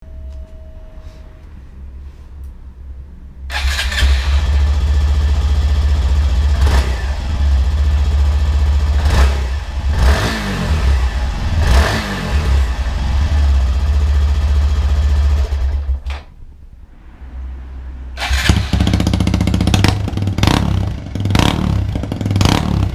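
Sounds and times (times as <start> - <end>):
motorcycle engine revving: 3.5 - 16.0, 18.1 - 22.9.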